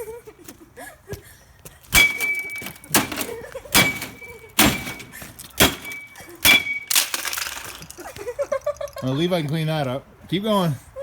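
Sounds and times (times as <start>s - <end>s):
bat striking metal microwave: 1.9s - 7.0s.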